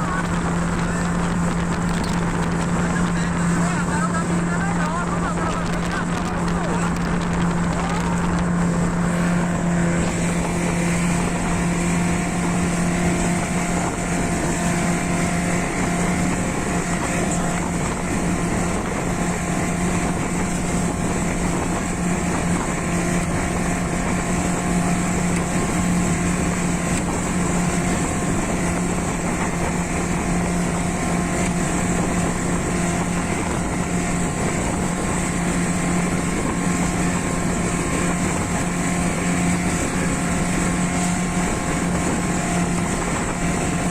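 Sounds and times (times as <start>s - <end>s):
boat rushing through water: 0.0s - 43.9s
motorboat engine drone: 0.0s - 43.9s.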